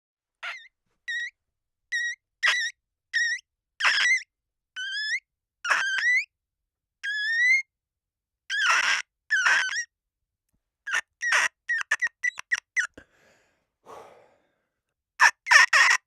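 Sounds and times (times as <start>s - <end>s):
glass squeaking when rubbed: 0.4s - 6.3s, 7.0s - 7.7s, 8.5s - 9.9s, 10.9s - 12.9s, 15.2s - 16.0s.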